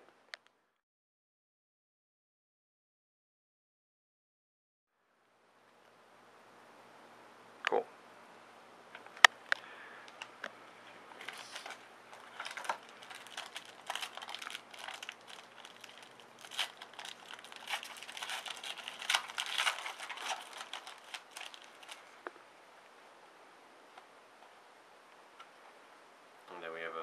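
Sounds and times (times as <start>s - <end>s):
wrapper crinkling and tearing: 11.2s - 22.2s.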